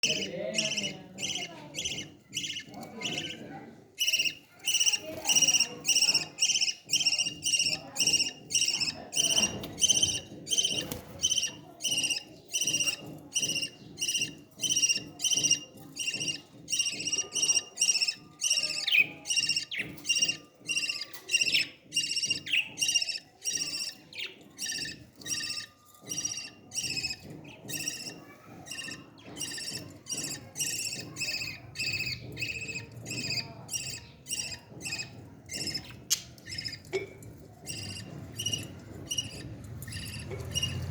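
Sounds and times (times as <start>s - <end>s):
parrot chicks begging calls: 0.0s - 40.9s.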